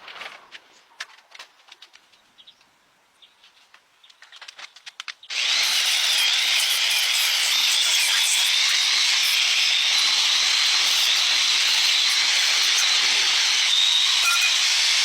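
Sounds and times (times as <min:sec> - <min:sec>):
loud spraying hiss: 0:05.6 - 0:13.6.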